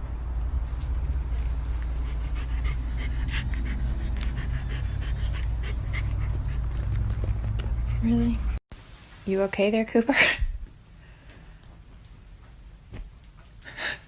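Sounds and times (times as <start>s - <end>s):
dog panting: 1.4s - 8.6s.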